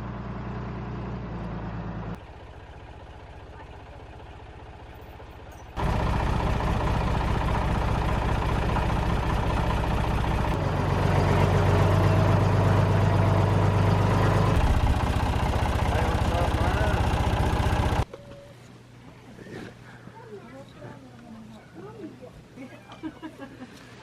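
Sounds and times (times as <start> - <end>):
engine running: 0.0 - 18.1.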